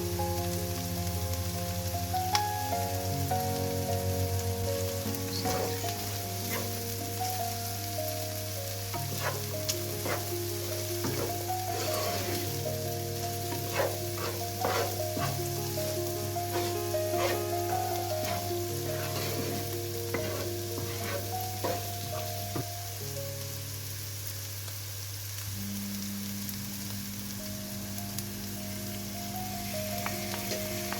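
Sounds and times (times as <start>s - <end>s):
food sizzling in a frying pan: 0.0s - 30.9s
soft background music: 0.0s - 30.9s
utensil scraping a pan: 5.3s - 6.8s, 9.0s - 22.6s.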